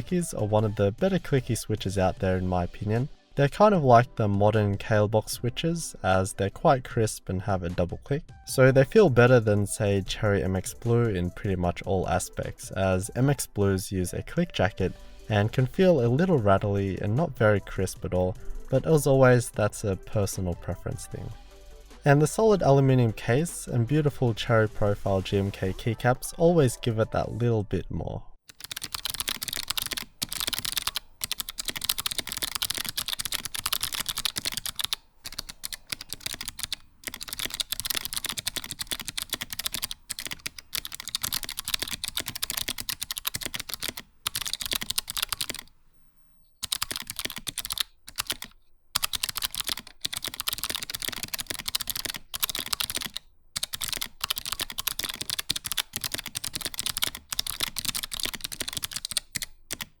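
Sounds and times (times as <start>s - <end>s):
typing on mechanical keyboard: 28.5s - 45.7s, 46.6s - 60.0s.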